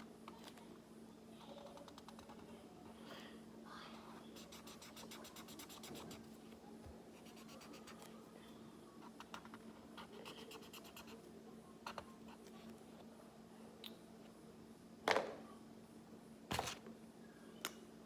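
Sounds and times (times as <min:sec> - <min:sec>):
pencil scratching on paper: 0:04.3 - 0:06.4, 0:07.2 - 0:08.1, 0:09.1 - 0:11.2.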